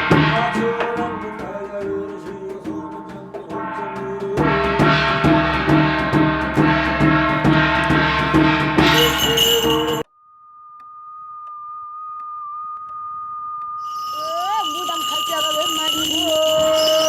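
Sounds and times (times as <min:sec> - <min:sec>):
percussion with jingling bells: 0:00.0 - 0:10.1, 0:13.8 - 0:17.0
sustained tones: 0:04.8 - 0:10.1, 0:13.8 - 0:17.0
steady high tone: 0:07.8 - 0:10.1, 0:13.8 - 0:17.0.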